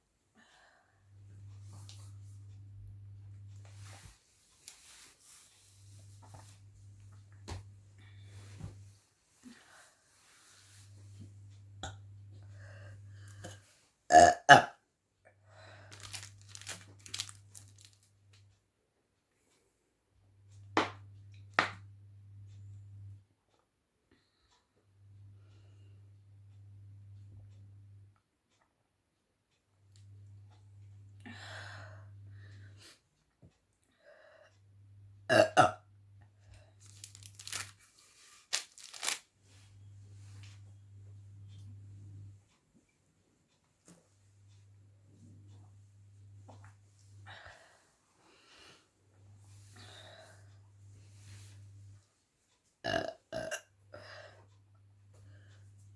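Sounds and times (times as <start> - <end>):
woman burping: 13.4 - 14.8, 35.3 - 35.8, 52.8 - 53.7
plastic bottle crinkling: 15.9 - 18.1, 36.8 - 39.3
sharp plastic cracks: 38.5 - 39.2.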